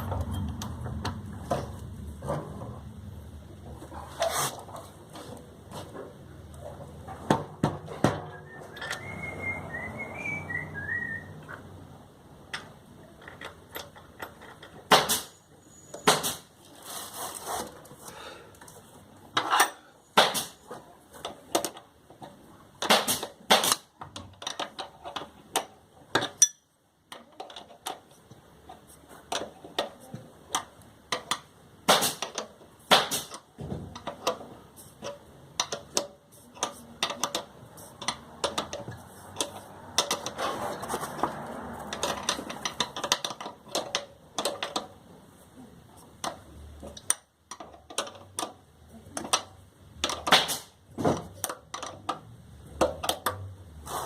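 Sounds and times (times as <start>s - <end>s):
small metal parts clinking: 24.2s - 28.1s, 41.2s - 44.8s.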